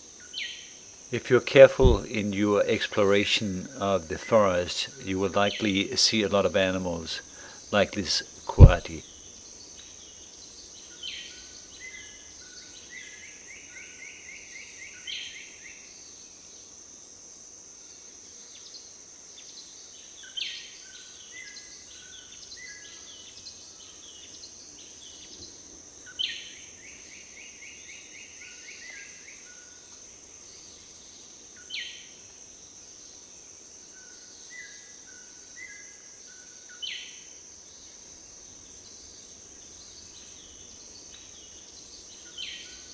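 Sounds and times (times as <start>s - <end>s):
insects droning: 0.0s - 42.9s
bird singing: 0.2s - 15.9s, 37.8s - 42.9s.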